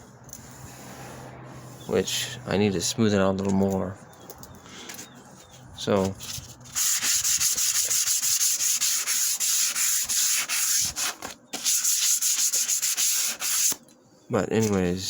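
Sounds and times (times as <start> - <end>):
sandpaper rasping on wood: 6.0 - 13.8.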